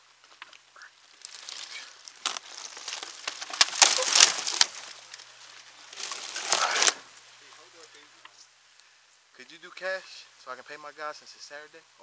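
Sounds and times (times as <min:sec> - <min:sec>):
debris rustling and crunching: 0:00.2 - 0:08.1.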